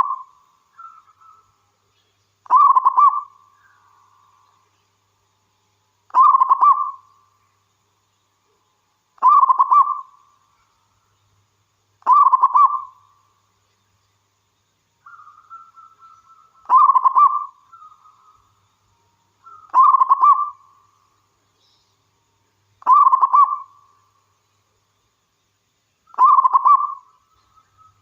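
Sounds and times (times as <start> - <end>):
dove cooing: 2.5 - 3.3, 6.1 - 7.0, 9.2 - 10.1, 12.0 - 12.9, 15.1 - 18.0, 19.5 - 20.6, 22.8 - 23.7, 26.2 - 27.0.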